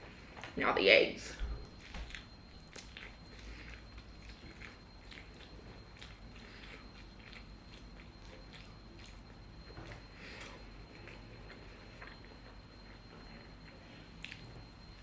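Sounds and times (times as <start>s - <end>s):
person chewing with mouth smacks: 1.6s - 15.0s.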